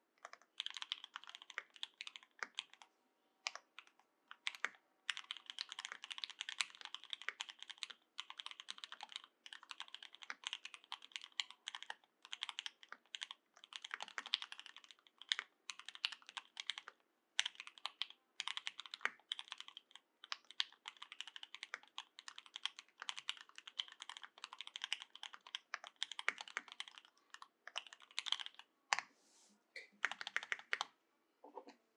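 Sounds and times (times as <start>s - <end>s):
fast typing on mechanical keyboard: 0.2s - 2.8s, 3.8s - 28.6s, 30.0s - 30.8s.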